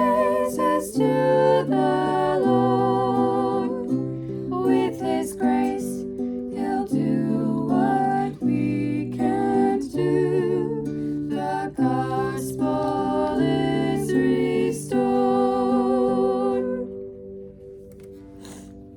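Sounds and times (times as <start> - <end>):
person singing: 0.0 - 17.1
guitar chords: 0.0 - 18.9.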